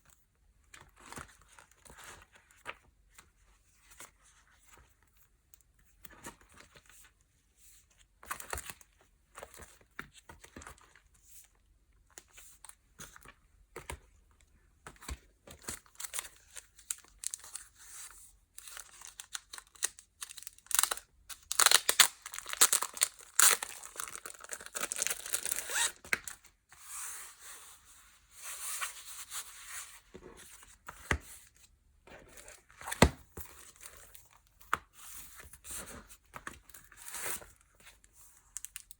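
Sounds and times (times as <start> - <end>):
packaging crinkling and tearing: 18.6 - 26.4.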